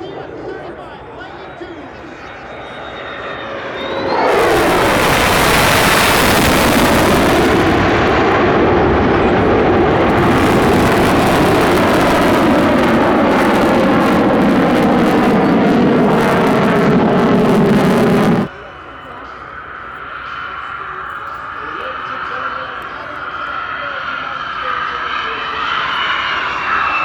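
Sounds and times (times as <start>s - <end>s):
fighter jet flying past: 2.3s - 18.5s.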